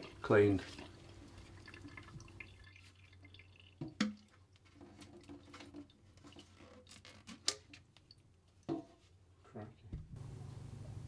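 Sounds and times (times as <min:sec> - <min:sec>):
water dripping: 0:00.0 - 0:04.6.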